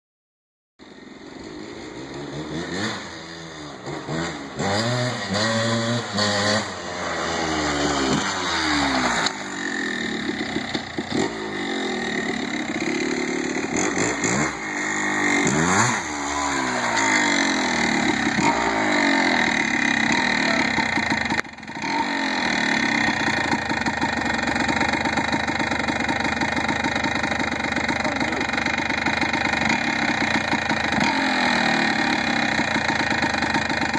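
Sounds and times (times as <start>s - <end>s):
two-stroke motorcycle engine revving: 0.8s - 33.9s.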